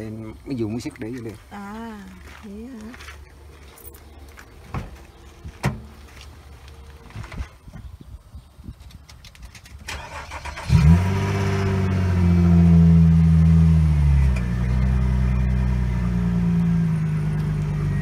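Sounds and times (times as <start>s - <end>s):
car engine starting and idling: 9.8s - 18.0s.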